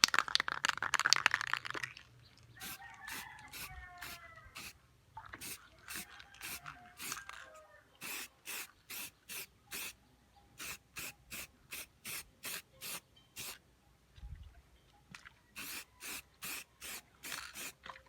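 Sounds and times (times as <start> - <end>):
spray paint can hissing: 2.6 - 4.7, 5.4 - 7.3, 8.0 - 10.0, 10.6 - 13.6, 15.6 - 17.7.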